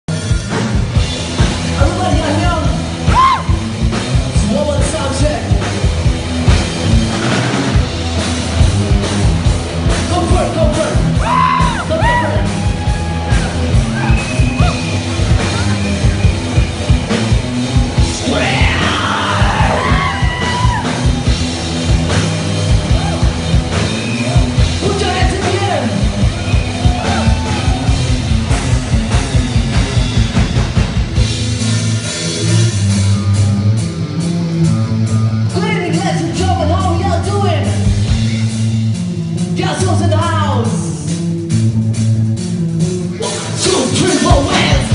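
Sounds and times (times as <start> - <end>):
rock band playing live: 0.1 - 44.9
person yelling and singing: 2.0 - 3.6, 10.4 - 14.8, 18.1 - 20.9, 43.2 - 44.9.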